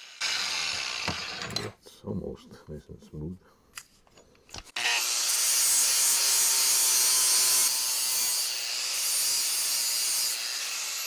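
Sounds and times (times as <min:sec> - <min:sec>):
grinder grinding metal: 0:00.0 - 0:01.8, 0:04.8 - 0:11.0.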